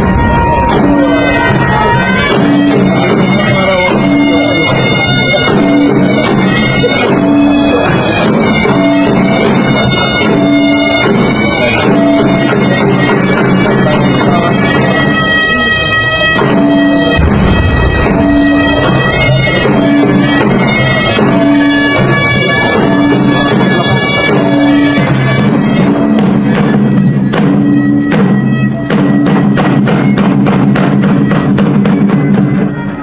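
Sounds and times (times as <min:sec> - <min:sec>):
shrill double-reed pipes: 0:00.0 - 0:33.0
steady low drone: 0:17.0 - 0:21.1.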